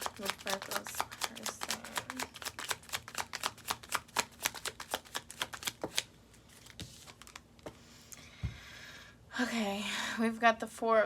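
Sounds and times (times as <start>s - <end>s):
cards being riffle-shuffled: 0.0s - 7.8s.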